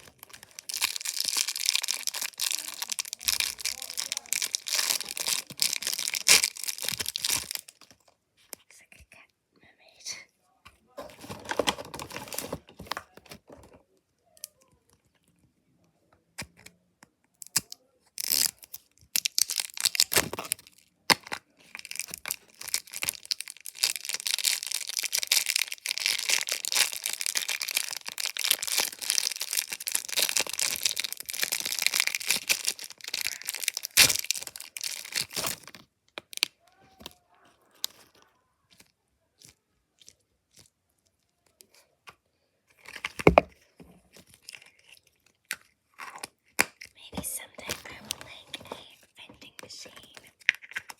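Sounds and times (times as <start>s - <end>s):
packaging rustling: 0.0s - 7.9s, 11.0s - 13.8s, 21.8s - 36.5s
packaging tearing and crinkling: 0.0s - 7.9s, 11.1s - 13.6s, 17.4s - 37.1s, 42.8s - 43.5s.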